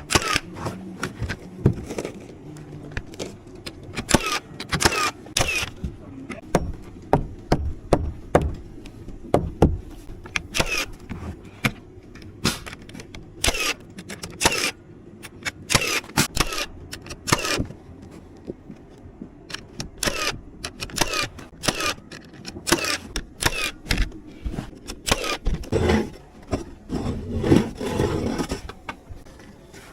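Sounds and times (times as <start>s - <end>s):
hammer nailing wood: 6.5s - 8.6s.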